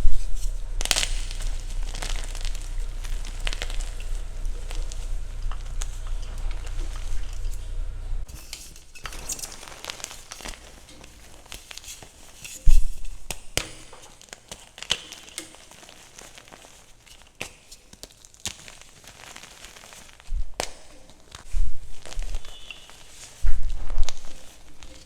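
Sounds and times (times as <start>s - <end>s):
low steady hum: 0.0s - 8.6s
chalk crumbling and crackling: 0.0s - 25.0s.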